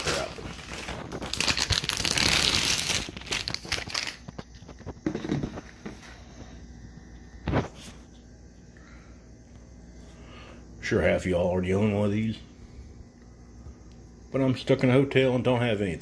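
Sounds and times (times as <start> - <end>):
packaging crinkling: 0.0 - 5.0.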